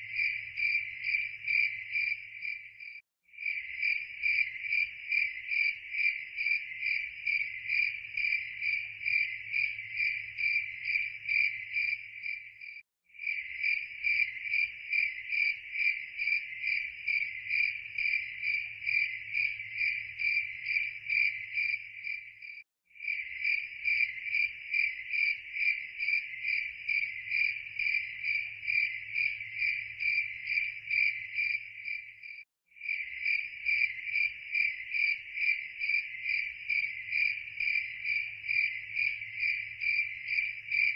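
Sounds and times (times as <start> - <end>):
crickets chirping: 0.0 - 40.9.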